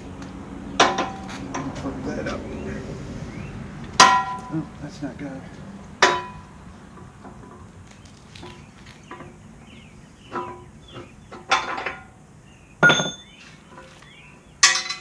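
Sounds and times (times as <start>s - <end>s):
metal parts clinking: 12.8s - 13.3s.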